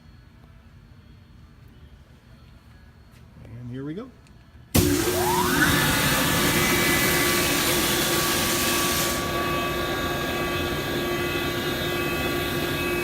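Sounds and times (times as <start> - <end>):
air compressor motor whine: 4.6 - 13.0.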